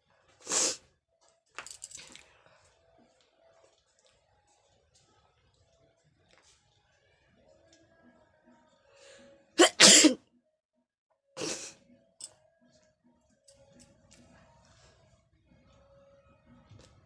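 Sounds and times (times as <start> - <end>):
woman sneezing: 9.6 - 10.2, 11.4 - 11.8.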